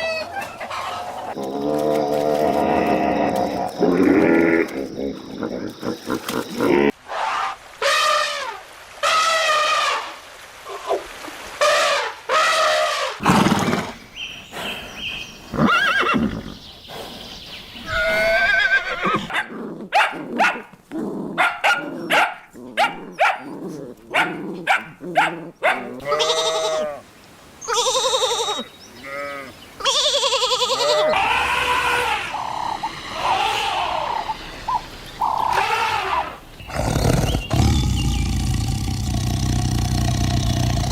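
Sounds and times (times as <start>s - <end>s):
farm animals calling: 0.0s - 8.4s, 24.1s - 27.0s, 27.6s - 38.5s.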